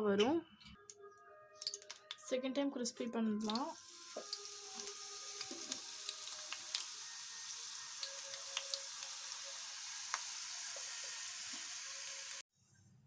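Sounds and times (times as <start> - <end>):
sharp pops and crackles: 1.6 - 2.2
fries sizzling in hot oil: 3.4 - 12.4.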